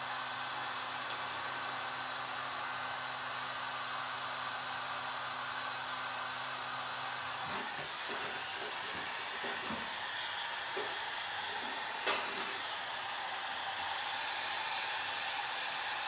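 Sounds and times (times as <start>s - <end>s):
heat gun blowing: 7.1s - 16.0s.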